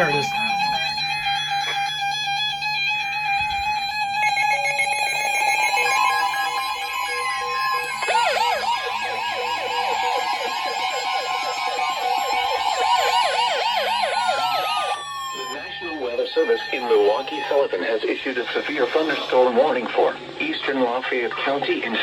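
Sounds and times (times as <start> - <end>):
fast siren-like warble: 3.5 - 19.7
warbling digital header tones: 4.0 - 19.8.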